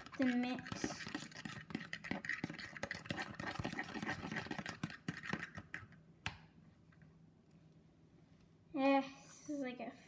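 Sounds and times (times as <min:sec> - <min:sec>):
slime squishing in a bowl: 0:00.0 - 0:06.0.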